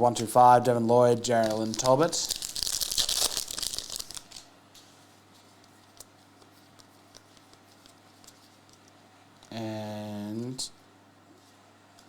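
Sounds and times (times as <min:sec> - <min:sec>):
cards and wrapper rustling: 0:01.3 - 0:04.5.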